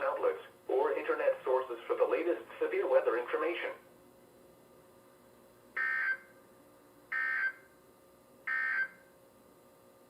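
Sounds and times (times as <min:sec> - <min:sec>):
two-tone digital screeches: 0:05.8 - 0:06.2, 0:07.1 - 0:07.6, 0:08.5 - 0:09.0.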